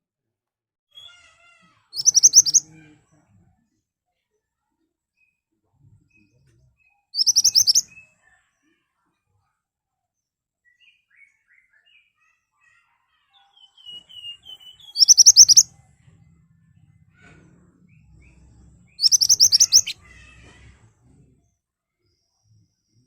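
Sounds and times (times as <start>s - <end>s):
bird singing high twitters: 2.0s - 2.6s, 7.2s - 8.2s, 13.4s - 15.7s, 17.9s - 20.2s.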